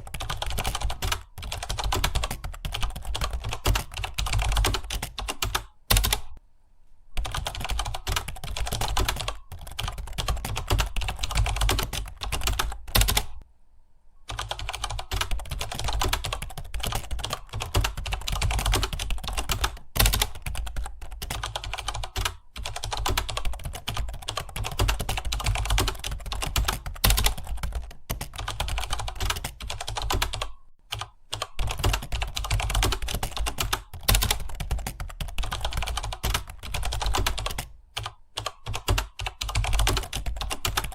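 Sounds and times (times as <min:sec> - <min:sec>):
fast typing on keyboard: 0:00.0 - 0:06.4, 0:07.2 - 0:13.4, 0:14.3 - 0:40.9.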